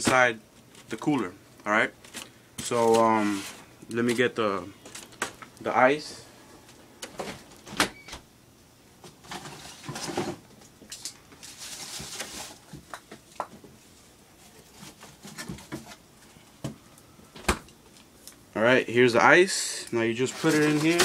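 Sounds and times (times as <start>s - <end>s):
rustling: 11.0s - 12.8s.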